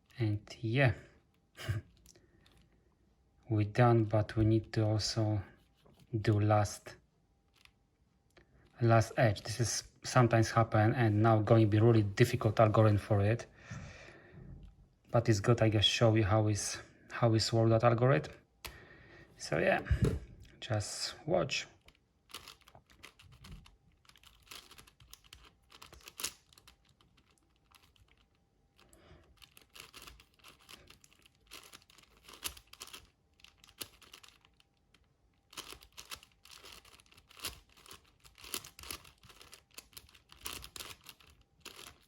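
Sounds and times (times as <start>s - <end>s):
puzzle cube plastic clicks: 21.8s - 28.4s, 29.3s - 42.0s.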